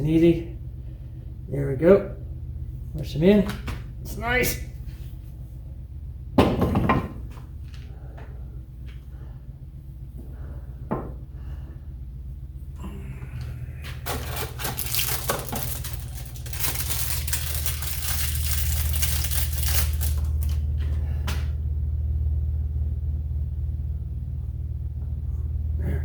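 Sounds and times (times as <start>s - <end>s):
steady low hum: 0.0s - 26.0s
rustling scrape: 14.0s - 20.6s.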